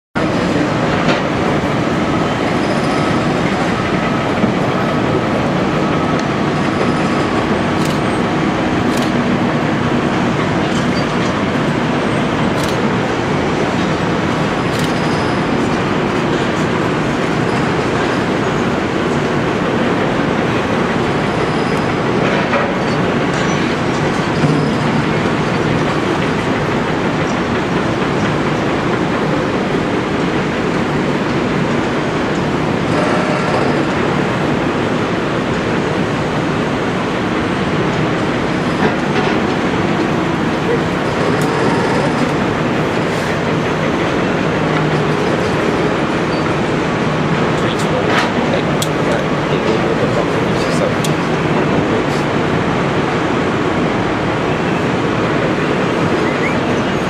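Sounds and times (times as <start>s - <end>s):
excavator engine and hydraulics: 0.2s - 57.0s.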